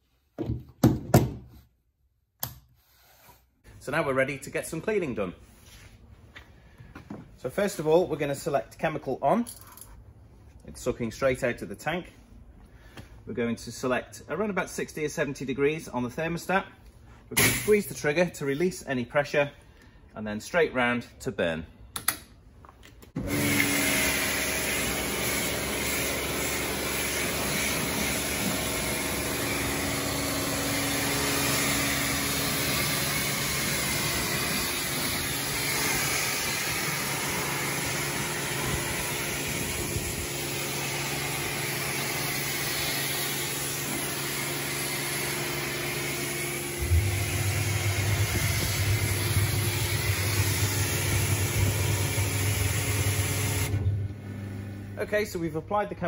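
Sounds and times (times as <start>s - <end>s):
pressure washer drone with hiss: 23.3s - 53.8s
deeper hum: 46.6s - 52.8s.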